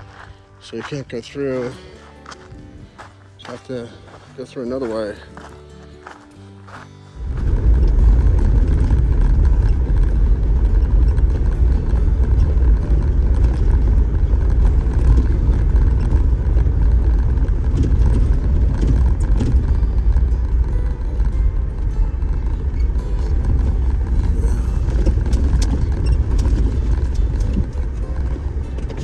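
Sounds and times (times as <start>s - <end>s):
off-road vehicle engine rumble: 0.0s - 29.0s
faint rattles: 7.2s - 29.0s.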